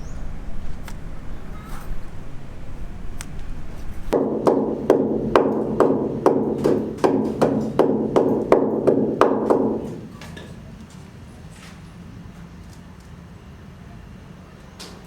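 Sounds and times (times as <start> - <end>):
sharp knocks: 4.1 - 10.5.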